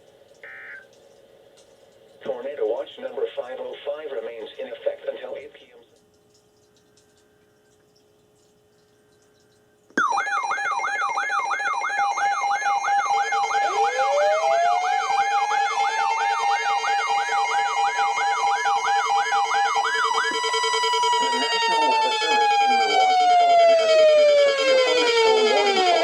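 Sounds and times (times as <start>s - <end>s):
alarm rising in pitch: 0.4s - 0.8s, 10.0s - 26.0s
steady alert tones: 0.4s - 0.8s, 10.0s - 23.3s
warbling weather radio alarm: 0.4s - 0.9s, 10.0s - 26.0s.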